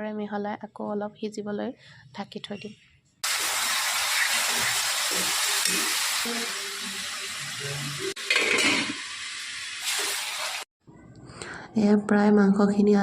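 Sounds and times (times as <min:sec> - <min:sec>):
meat sizzling in hot oil: 0:03.2 - 0:10.7.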